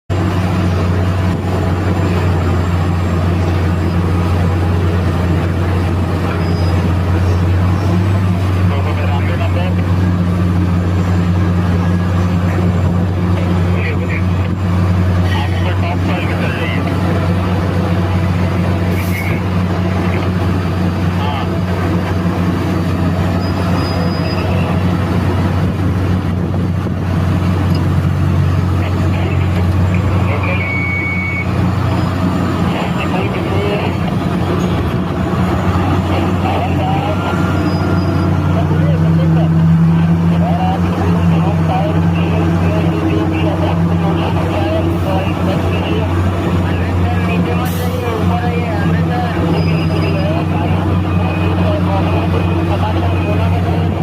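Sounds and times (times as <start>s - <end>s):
large diesel engine droning: 0.0s - 54.0s
high metallic squeal: 6.3s - 8.0s, 23.2s - 24.7s, 37.0s - 38.5s, 49.5s - 50.4s.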